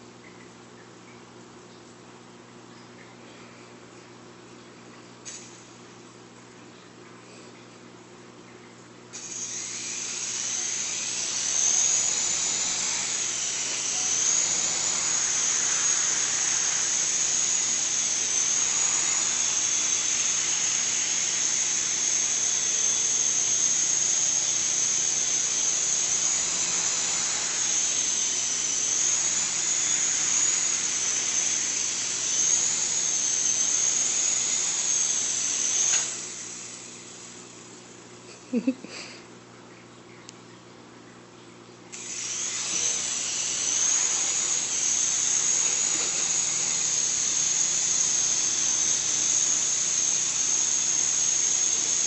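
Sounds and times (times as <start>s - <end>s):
rc helicopter motor whine: 9.2s - 37.7s, 41.9s - 52.0s.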